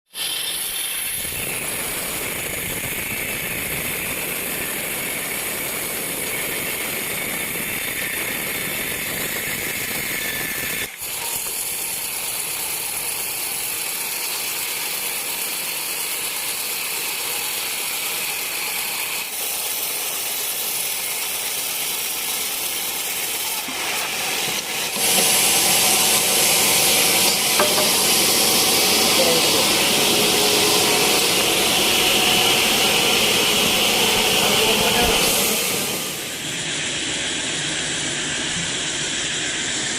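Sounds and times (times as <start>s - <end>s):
band saw cutting a log: 0.1s - 37.0s.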